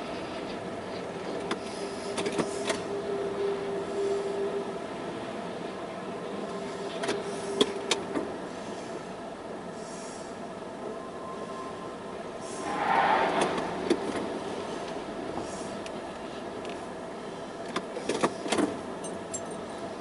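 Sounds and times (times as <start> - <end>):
freight train rumbling past: 10.4 - 17.6.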